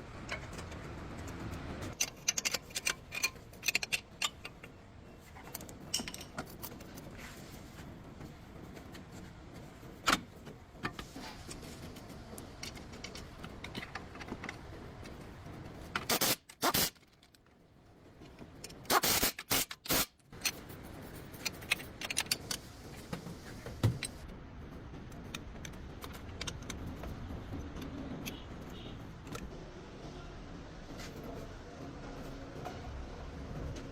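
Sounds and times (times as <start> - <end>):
metal tools clinking and scraping: 1.9 - 7.2.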